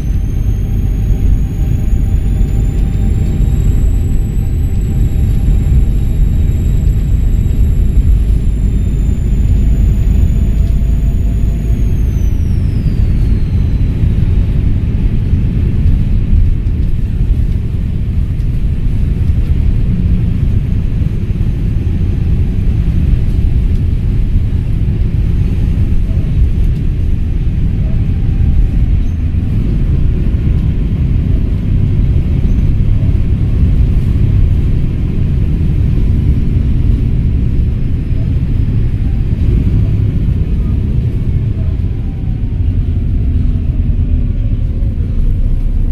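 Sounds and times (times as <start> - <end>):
turbocharger whistle: 0.0 - 15.7
diesel bus engine rumbling: 0.0 - 45.9.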